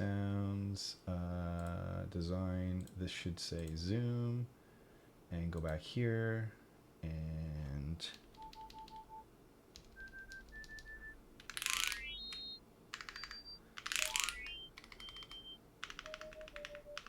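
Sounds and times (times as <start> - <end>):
mechanical keyboard clicks: 9.8 - 17.0
short electronic beeps: 10.0 - 17.0.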